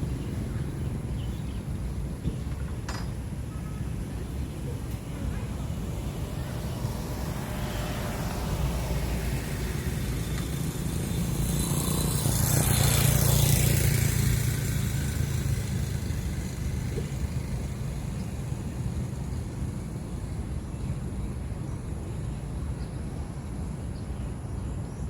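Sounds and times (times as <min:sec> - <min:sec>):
low engine rumble: 0:00.0 - 0:24.6
motor vehicle passing: 0:04.6 - 0:20.2.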